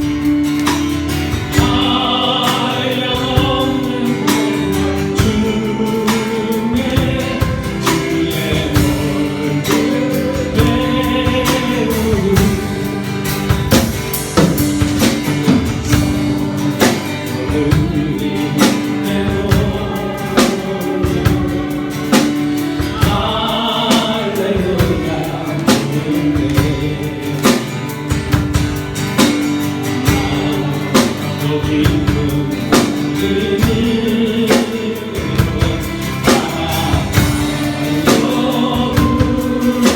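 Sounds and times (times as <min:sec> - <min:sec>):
band playing: 0:00.0 - 0:39.9
group singing a hymn: 0:00.0 - 0:39.9
steady drum beat: 0:00.0 - 0:39.9.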